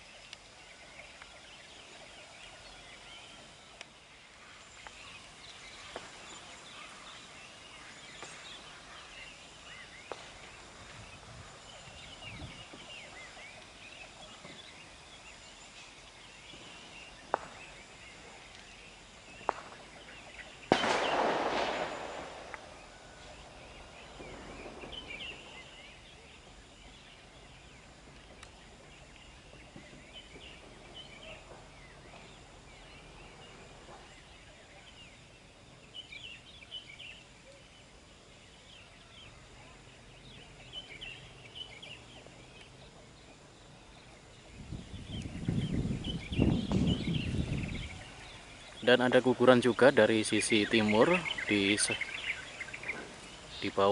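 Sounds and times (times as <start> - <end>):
birds chirping: 0.0 - 53.9
loud sudden bang: 20.7 - 22.5.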